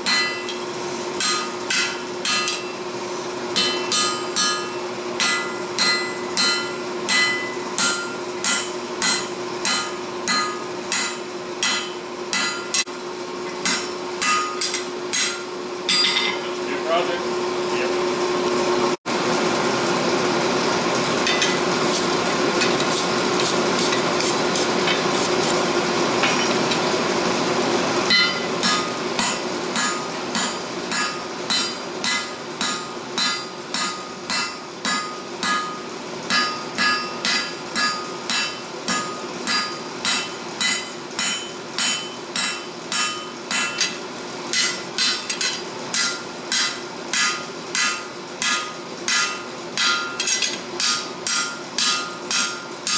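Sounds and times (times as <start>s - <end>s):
hammer blows on steel anvil: 28.1s - 52.9s.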